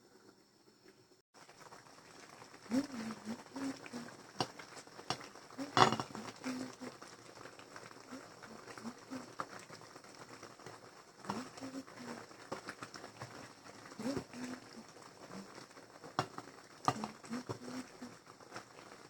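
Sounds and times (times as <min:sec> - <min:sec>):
kitchen utensils knocking and clinking: 0:05.8 - 0:06.1.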